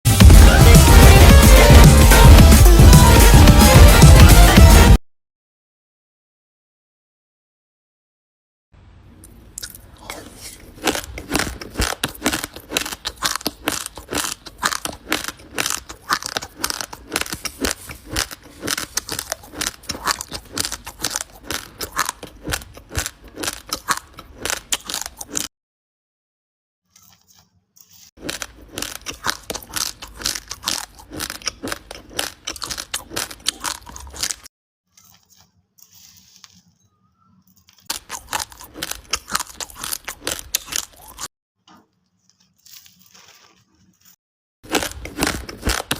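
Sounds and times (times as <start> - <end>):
crunching dry rice grains: 9.6 - 25.5, 26.9 - 41.3, 42.0 - 45.9.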